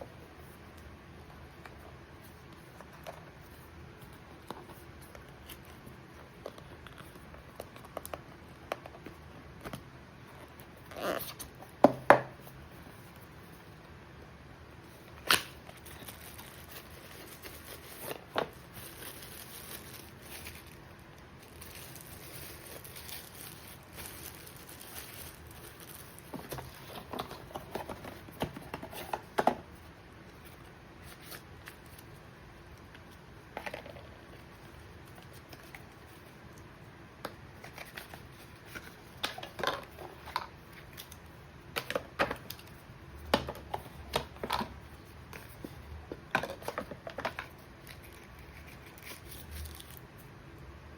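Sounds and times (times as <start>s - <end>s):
packaging rustling and crinkling: 14.8s - 36.5s, 37.5s - 50.3s.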